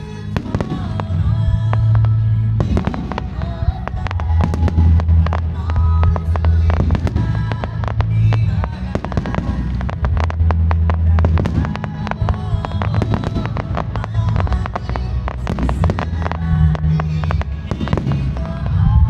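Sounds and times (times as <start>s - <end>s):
fireworks bursting and crackling: 0.0s - 18.9s
music over loudspeakers: 0.0s - 19.0s
steady low rumble: 0.0s - 19.0s.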